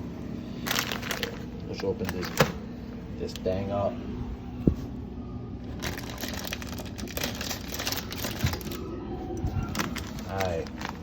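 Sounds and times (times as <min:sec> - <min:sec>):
plastic packet tearing and crinkling: 0:00.6 - 0:02.4, 0:05.7 - 0:08.8, 0:09.7 - 0:11.0.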